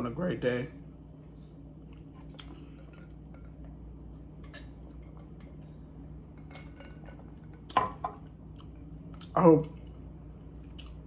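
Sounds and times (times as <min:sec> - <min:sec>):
faint steady hum: 0:00.0 - 0:11.0
tableware clicking and clinking: 0:06.4 - 0:08.2.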